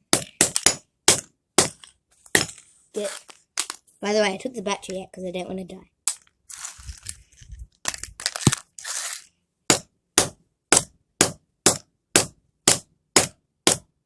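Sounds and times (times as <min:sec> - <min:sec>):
crunching and scraping: 0:01.7 - 0:04.0, 0:06.1 - 0:09.3.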